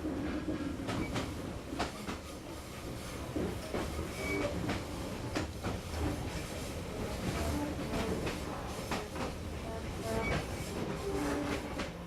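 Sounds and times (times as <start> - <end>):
train rumbling on track: 0.0 - 12.0
train wheels clacking: 3.3 - 12.0.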